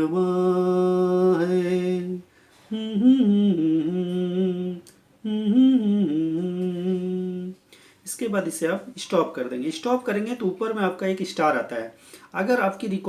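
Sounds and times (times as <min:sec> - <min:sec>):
man humming a melody: 0:00.0 - 0:07.6.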